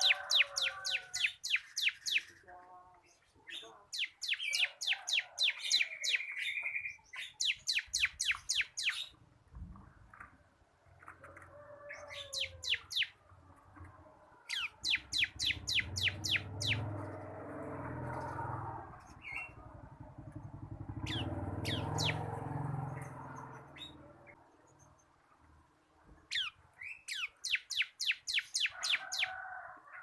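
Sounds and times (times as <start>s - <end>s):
bird singing sharp high notes: 14.5s - 17.0s
low rumble: 15.5s - 24.3s.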